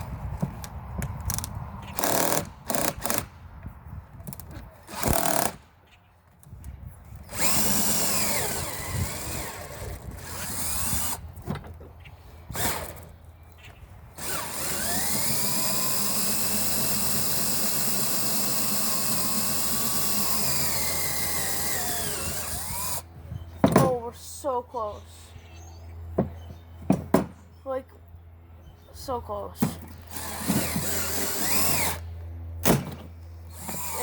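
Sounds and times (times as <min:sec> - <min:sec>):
cordless drill whining into wood: 0:01.3 - 0:03.2, 0:04.9 - 0:05.6, 0:07.2 - 0:11.2, 0:12.5 - 0:13.1, 0:14.2 - 0:23.1, 0:29.9 - 0:32.1, 0:33.5 - 0:34.0.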